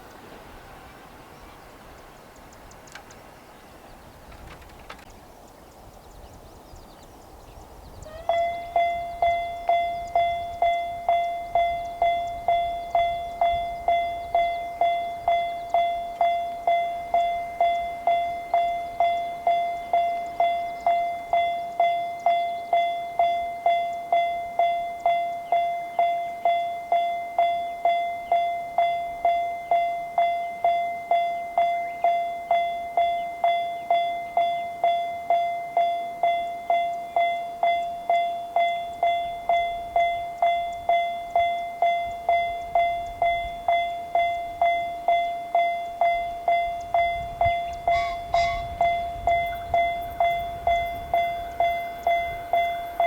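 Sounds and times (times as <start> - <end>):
level crossing warning bell: 8.0 - 53.0.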